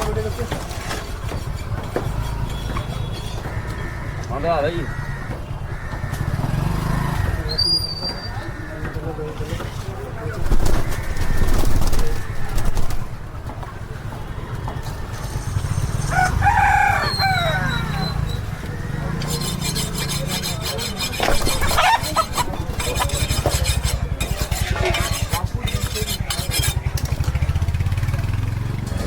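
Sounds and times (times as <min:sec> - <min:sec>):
rooster crowing: 0:16.0 - 0:18.2.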